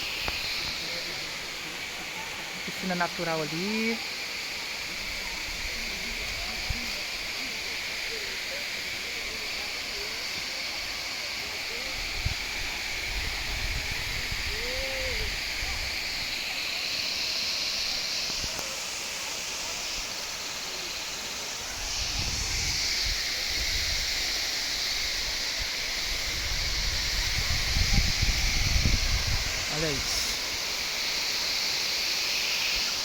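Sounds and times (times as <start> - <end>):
waterfall rushing: 0.0 - 31.8
wind rumble on microphone: 26.1 - 29.7.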